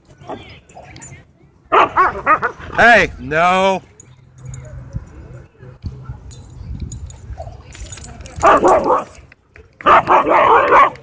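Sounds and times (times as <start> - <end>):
dogs barking and snarling: 1.7 - 2.8, 8.4 - 9.2, 9.8 - 11.0.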